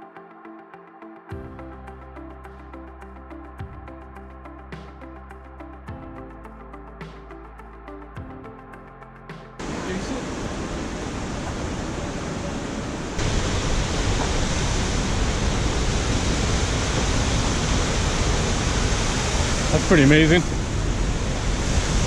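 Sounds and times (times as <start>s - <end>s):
music: 0.0s - 10.2s
waterfall rushing: 9.6s - 22.0s.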